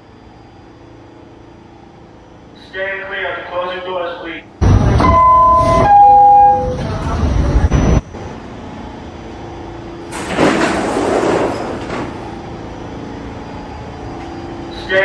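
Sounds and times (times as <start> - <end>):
subway door chime: 5.0 - 6.9
loud rumbling noise: 10.0 - 12.4
hiss: 10.1 - 12.4.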